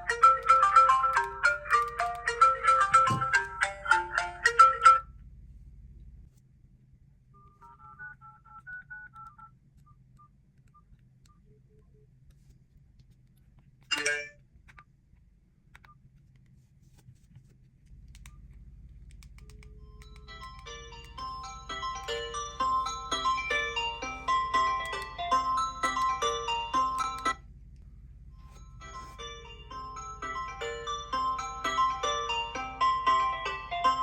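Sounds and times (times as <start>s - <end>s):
phone ringtone melody: 0.0s - 5.1s, 13.9s - 14.3s, 20.0s - 27.4s, 28.4s - 34.0s
faint electronic beeps: 7.3s - 12.1s, 19.2s - 27.4s.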